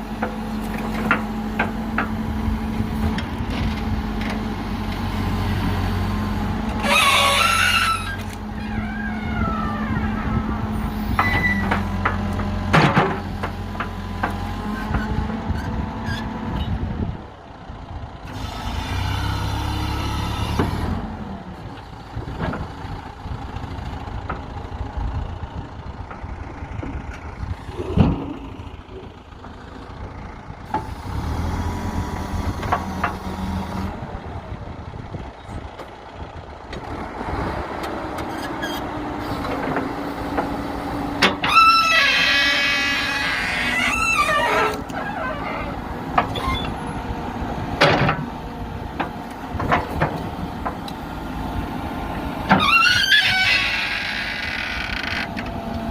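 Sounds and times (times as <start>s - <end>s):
backhoe diesel engine working: 0.0s - 55.9s
squeal: 11.2s - 11.7s, 38.6s - 38.9s, 46.4s - 46.8s, 52.6s - 54.4s.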